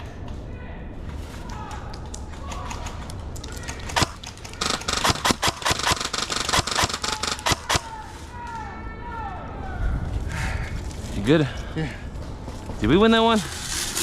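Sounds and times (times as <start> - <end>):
airsoft guns firing: 3.6 - 8.0.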